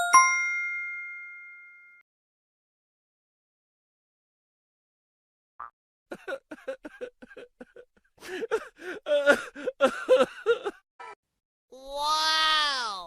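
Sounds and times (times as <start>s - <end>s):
person laughing: 6.1s - 11.2s.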